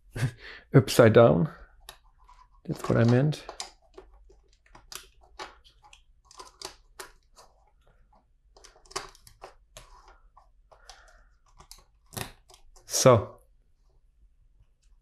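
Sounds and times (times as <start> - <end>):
plastic bricks clicking together: 1.8 - 7.5.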